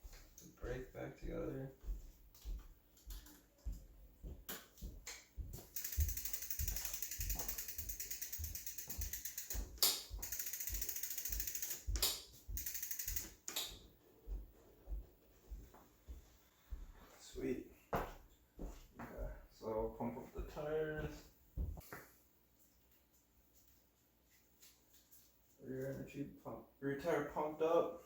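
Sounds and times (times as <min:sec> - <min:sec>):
bicycle freewheel ratcheting: 0:05.7 - 0:13.6.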